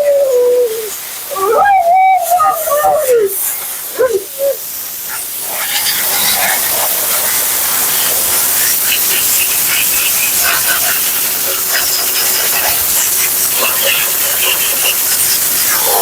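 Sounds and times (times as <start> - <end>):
dog whining: 0.0 - 4.7
pet dryer blowing air: 4.8 - 16.0.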